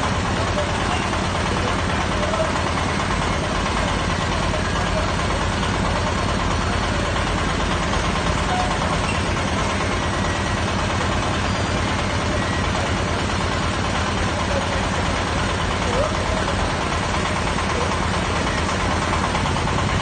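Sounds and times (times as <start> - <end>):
drilling rig engine pulsing: 0.0 - 20.0.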